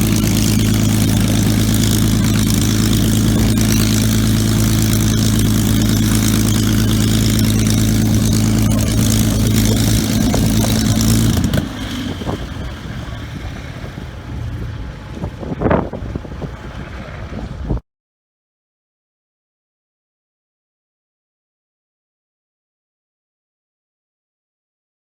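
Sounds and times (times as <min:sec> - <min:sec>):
engine humming: 0:00.0 - 0:17.8
wind noise: 0:00.0 - 0:17.8.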